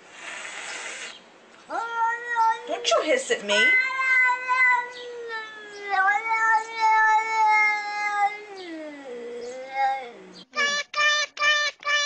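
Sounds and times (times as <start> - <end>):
cat yowling: 1.7 - 10.7.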